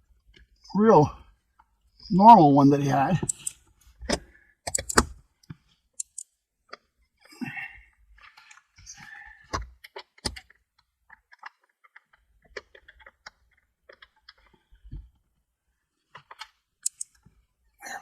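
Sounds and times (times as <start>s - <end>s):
small hard parts clicking: 9.8s - 14.6s, 16.2s - 17.2s.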